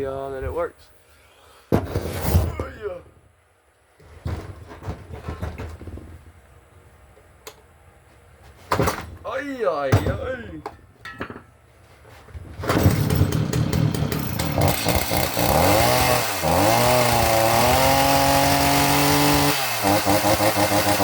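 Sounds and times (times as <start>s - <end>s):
chainsaw engine revving: 12.9s - 21.0s.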